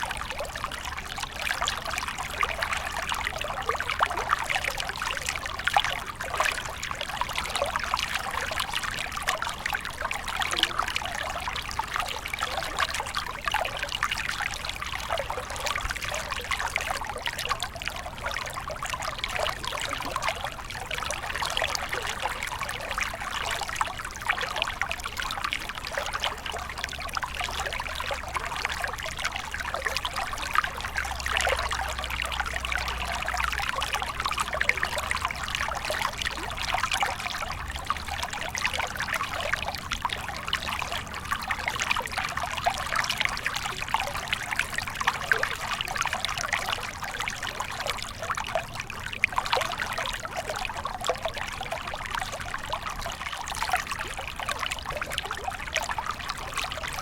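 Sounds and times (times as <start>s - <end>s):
stream trickling over rocks: 0.0s - 57.0s.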